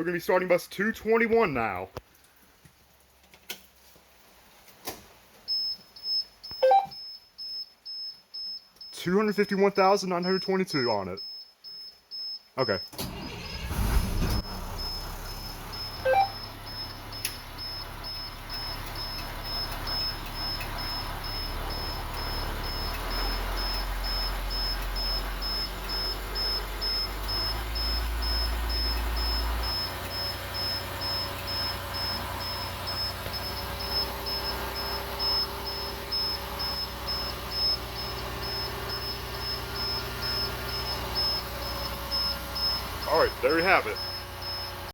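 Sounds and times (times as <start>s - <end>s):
rapid dashboard beeps: 5.5s - 9.4s, 10.1s - 44.9s
diesel bus engine idling: 13.0s - 44.9s.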